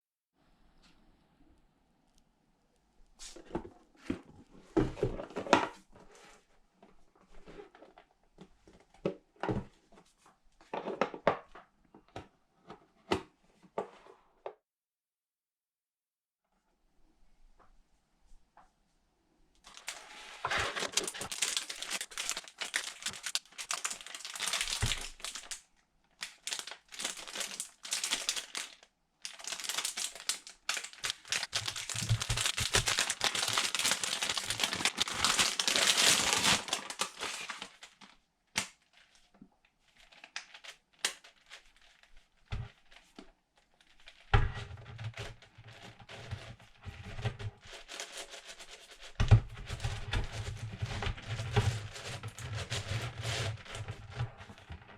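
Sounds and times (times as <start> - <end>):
packaging crinkling: 19.7 - 25.6, 26.2 - 44.3.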